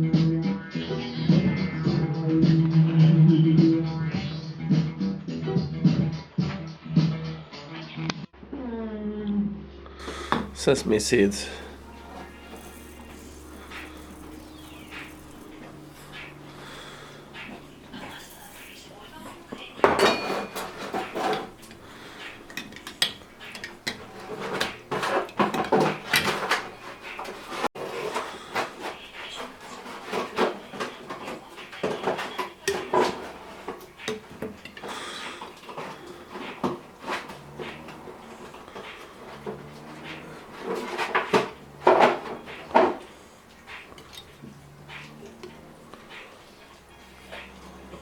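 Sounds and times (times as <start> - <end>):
dishes and utensils clinking: 10.0 - 48.0.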